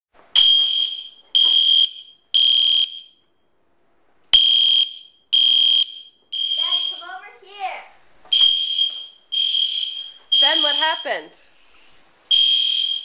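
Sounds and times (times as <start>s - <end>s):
smoke alarm beeping: 0.4s - 3.6s, 4.3s - 7.2s, 8.3s - 11.4s, 12.3s - 13.0s.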